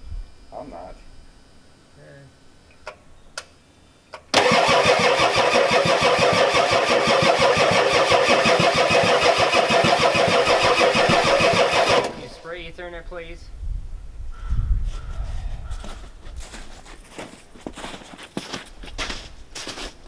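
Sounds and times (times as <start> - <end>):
diesel engine cranking on starter: 4.3 - 12.4.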